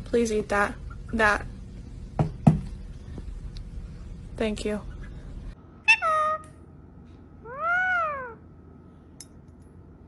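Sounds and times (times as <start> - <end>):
cat meowing: 7.5 - 8.4.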